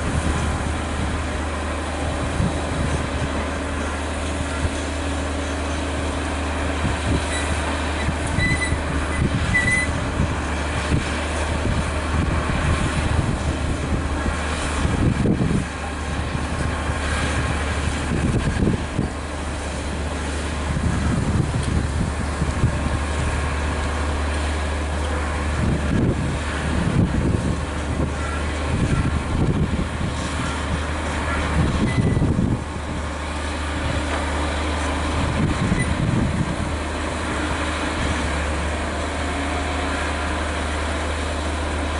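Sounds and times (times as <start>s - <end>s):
construction machinery engine drone: 0.0s - 41.9s
high metallic squeals: 7.3s - 10.0s, 31.8s - 32.3s.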